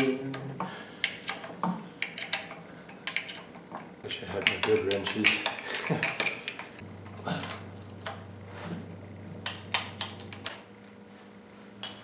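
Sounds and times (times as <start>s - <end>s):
low steady hum: 6.8s - 10.5s.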